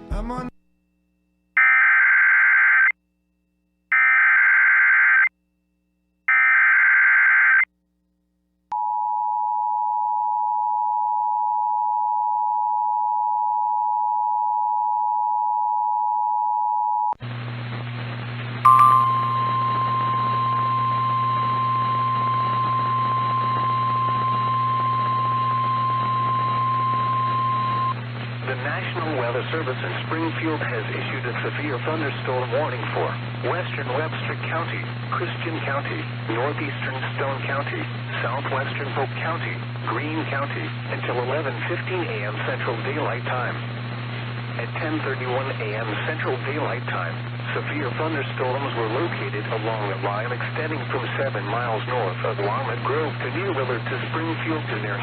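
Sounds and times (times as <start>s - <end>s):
radio hiss with low hum: 17.2s - 55.0s
steady warning alarm tone: 18.7s - 27.9s
two-tone attention signal: 18.7s - 27.9s.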